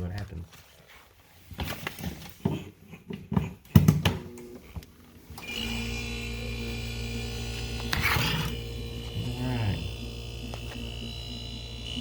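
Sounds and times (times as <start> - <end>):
refrigerator compressor humming: 5.4 - 12.0.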